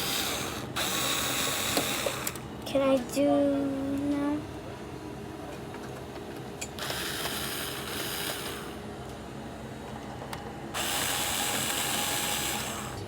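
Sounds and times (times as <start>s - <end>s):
ratchet-like mechanical scraping: 6.8s - 8.7s.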